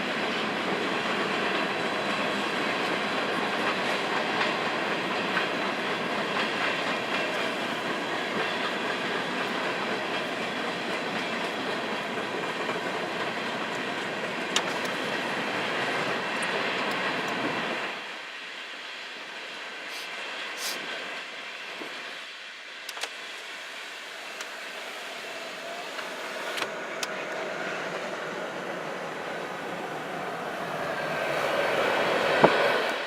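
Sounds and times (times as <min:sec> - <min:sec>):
train wheels clattering over rails: 0:00.0 - 0:18.1, 0:24.2 - 0:33.0.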